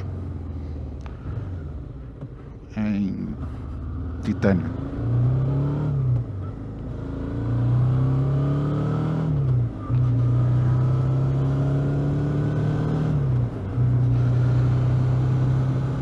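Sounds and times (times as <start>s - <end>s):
motorcycle engine accelerating: 3.7s - 16.0s.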